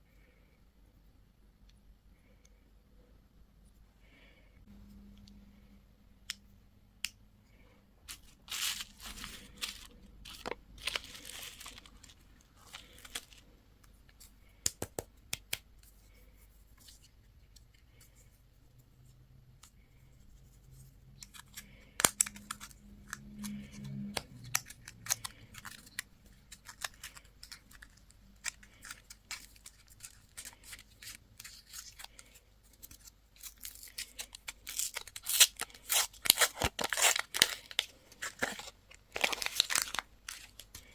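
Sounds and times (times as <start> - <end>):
candy wrapper tearing and crinkling: 8.1 - 13.4, 21.2 - 40.9.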